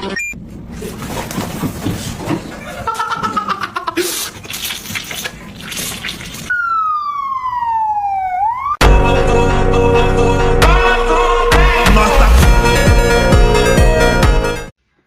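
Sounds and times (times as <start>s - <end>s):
music with heavy bass beat: 10.6s - 14.7s.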